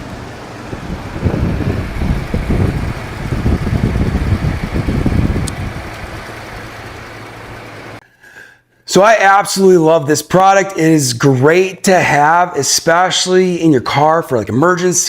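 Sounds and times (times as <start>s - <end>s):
wind buffeting microphone: 0.0s - 7.5s
car engine rumbling: 0.0s - 8.0s.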